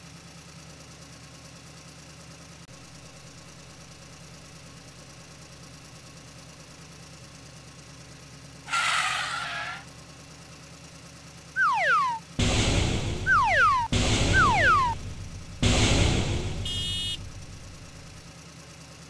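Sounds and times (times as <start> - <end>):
engine idling: 0.0 - 19.0
falling whistle sound effect: 11.6 - 12.3, 13.3 - 15.0.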